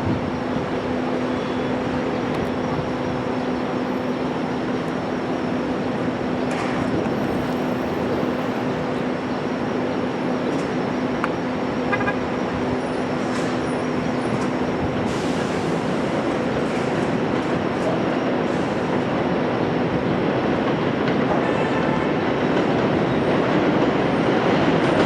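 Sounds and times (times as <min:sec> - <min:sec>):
city traffic hum: 0:00.0 - 0:25.0
elevated train rail hiss: 0:00.0 - 0:25.0.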